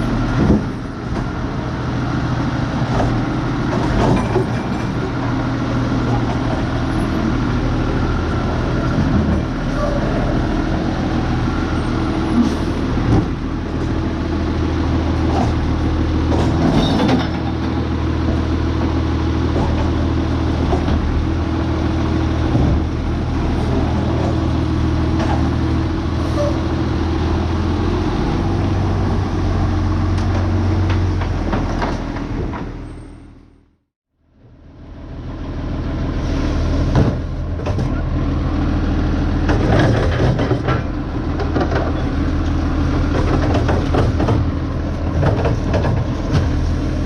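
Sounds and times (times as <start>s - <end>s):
knocks and clanks: 2.9s - 5.2s, 16.2s - 18.4s, 39.5s - 46.7s
garbage truck engine running: 34.4s - 47.0s.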